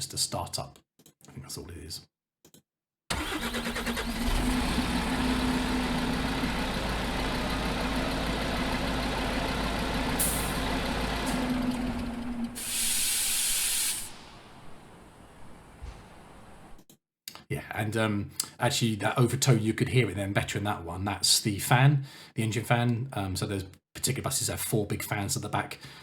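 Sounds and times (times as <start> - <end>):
bus engine starting and running: 3.1 - 16.8
air hiss: 12.6 - 14.9.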